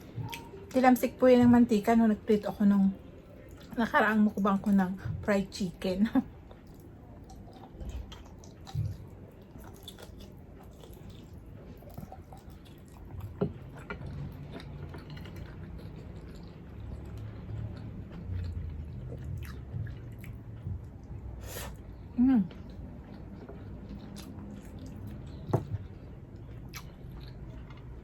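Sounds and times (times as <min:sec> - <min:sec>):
person chewing food: 0:06.3 - 0:28.0.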